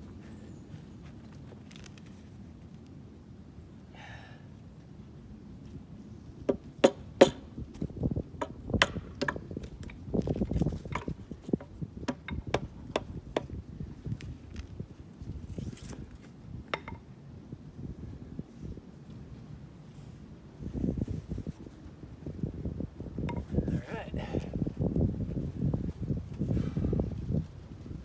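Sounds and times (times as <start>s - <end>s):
brief rustle: 1.0s - 2.9s
knocks and clinks on timber poles: 6.5s - 13.5s, 16.7s - 17.1s, 23.2s - 23.6s.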